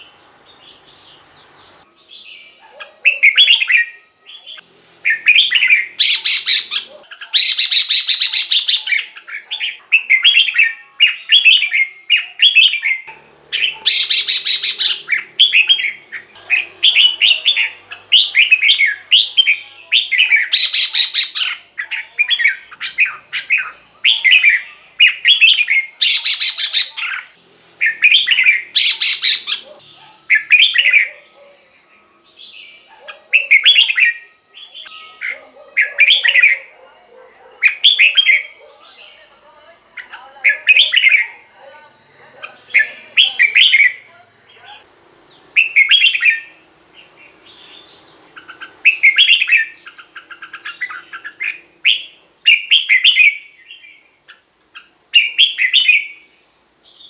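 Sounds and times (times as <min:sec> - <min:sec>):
bird singing whistled notes: 0:00.0 - 0:36.8, 0:37.6 - 0:39.2, 0:40.0 - 0:44.1, 0:45.3 - 0:57.0
harsh bird notes: 0:00.0 - 0:36.8.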